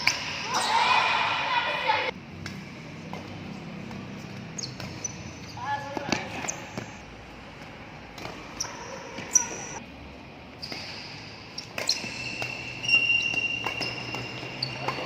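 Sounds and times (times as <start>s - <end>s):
high squeaking: 10.6s - 15.0s.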